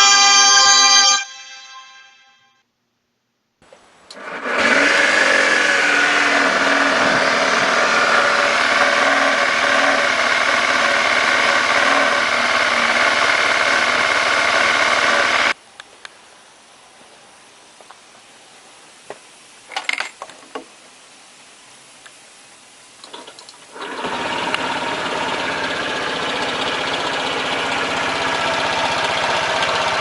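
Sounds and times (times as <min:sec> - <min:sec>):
scooter engine idling: 0:03.8 - 0:15.6, 0:23.7 - 0:30.0.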